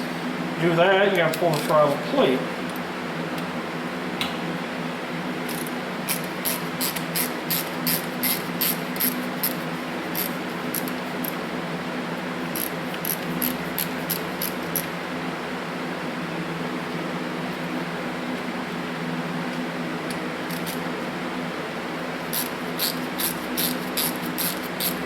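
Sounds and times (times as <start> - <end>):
steady low hum: 0.0 - 25.0
screwdriver clicking: 22.4 - 25.0.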